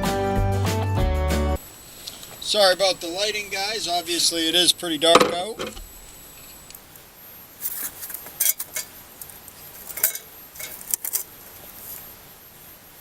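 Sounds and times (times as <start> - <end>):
metal hand tools clinking: 7.6 - 9.0, 9.8 - 11.3.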